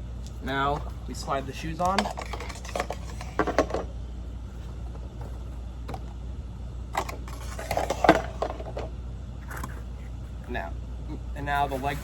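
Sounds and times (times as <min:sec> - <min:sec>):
steady low hum: 0:00.0 - 0:12.0
prop handling clunks and scrapes: 0:00.6 - 0:03.9, 0:04.5 - 0:06.1, 0:07.0 - 0:10.5.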